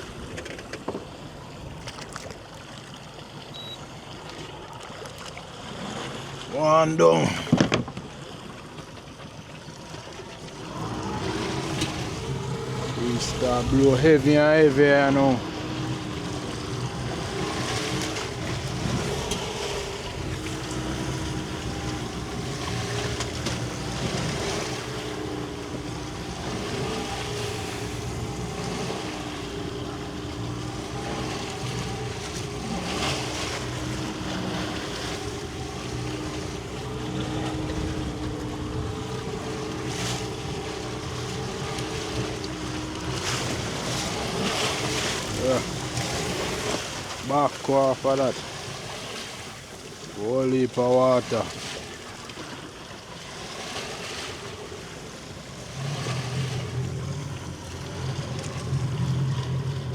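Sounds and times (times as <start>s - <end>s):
boat motor humming: 0.0s - 59.9s
waves splashing: 0.0s - 59.9s
wind: 0.0s - 59.9s.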